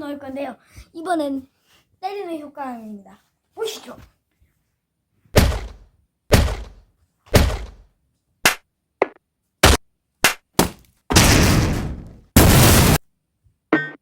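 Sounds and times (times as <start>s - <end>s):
punch sound effects: 5.4s - 6.8s, 7.4s - 7.8s, 10.6s - 13.0s
noisy crash: 11.1s - 13.0s.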